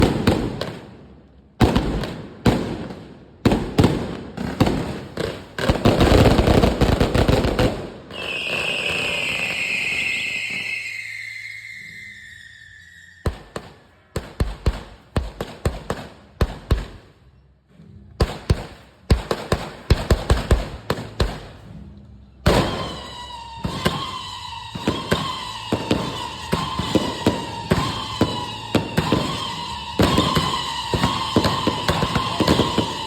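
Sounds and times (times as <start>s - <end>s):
fireworks bangs: 0.0s - 17.2s, 18.2s - 21.8s, 22.4s - 33.0s
descending firework whistle: 5.8s - 14.5s, 22.4s - 33.0s.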